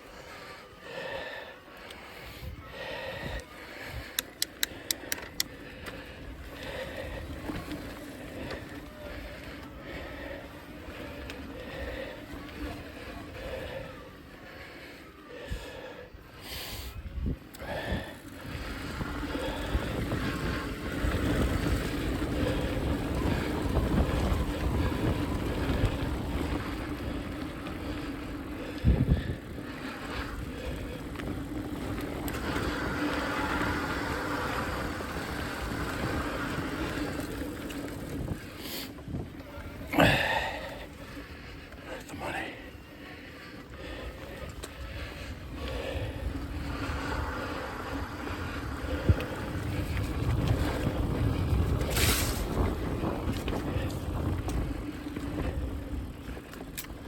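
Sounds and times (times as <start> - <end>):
wind on microphone: 17.0 - 39.4, 45.1 - 56.9.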